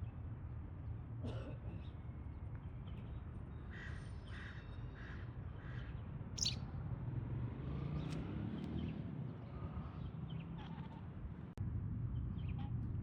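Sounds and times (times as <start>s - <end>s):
bird calling hoarsely: 6.4s - 6.6s.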